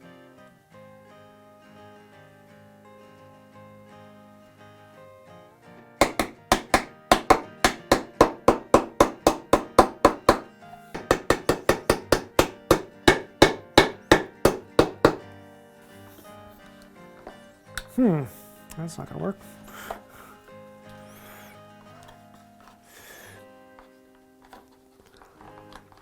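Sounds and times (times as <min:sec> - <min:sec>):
background music: 0:00.0 - 0:26.0
rapid hammer strikes: 0:06.0 - 0:15.2.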